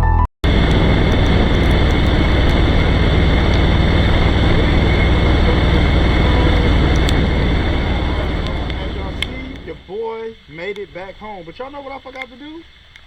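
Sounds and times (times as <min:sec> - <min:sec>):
motorcycle engine running: 0:00.4 - 0:09.9
wind noise on microphone: 0:00.4 - 0:09.9
road noise: 0:00.4 - 0:10.6.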